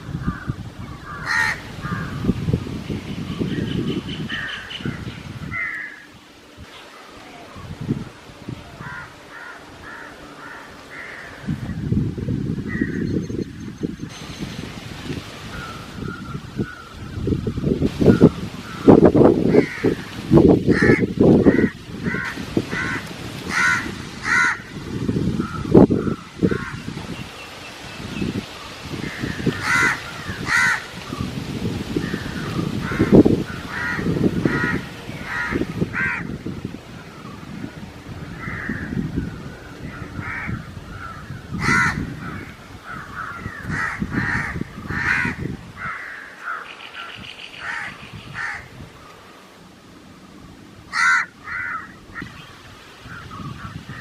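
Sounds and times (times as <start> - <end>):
harsh bird calls: 0.0 - 7.9, 12.6 - 31.3, 32.0 - 49.3, 50.9 - 54.0
wind buffeting microphone: 0.0 - 54.0
wind gusting through leaves: 0.0 - 54.0.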